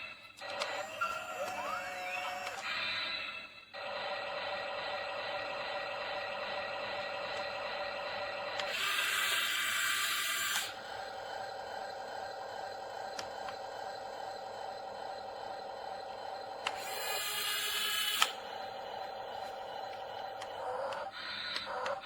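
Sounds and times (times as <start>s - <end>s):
small electric motors whirring: 0.4s - 3.3s, 5.4s - 10.8s, 16.6s - 18.5s.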